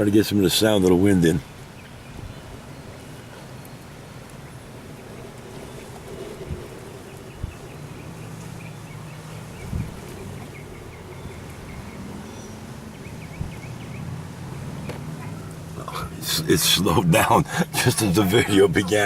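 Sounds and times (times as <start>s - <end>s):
wind rumbling on microphone: 1.4s - 16.2s.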